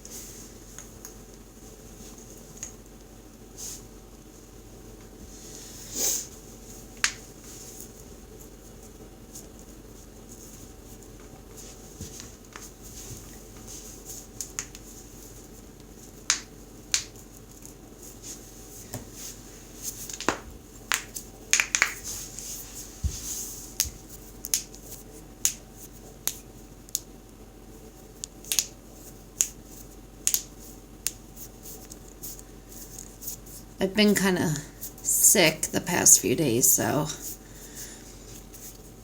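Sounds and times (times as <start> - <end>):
steady low hum: 0.0 - 39.0
sharp irregular clicks and pops: 16.3 - 17.1, 20.1 - 22.0, 23.8 - 24.8, 26.2 - 27.1, 28.2 - 28.8, 30.2 - 31.2.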